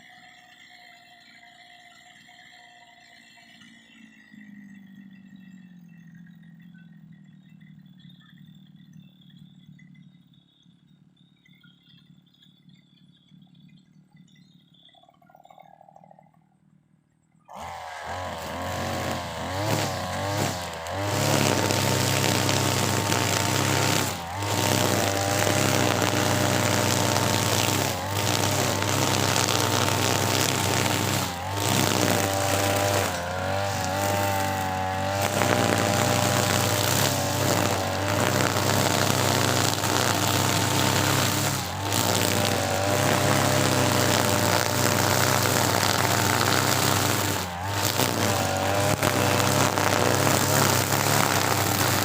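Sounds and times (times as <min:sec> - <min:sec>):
brush cutter engine cutting grass: 0:17.5 - 0:52.0.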